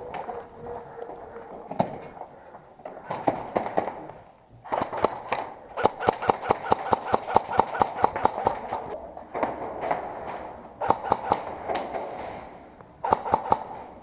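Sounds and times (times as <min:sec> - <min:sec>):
airsoft guns firing: 0:03.1 - 0:14.0.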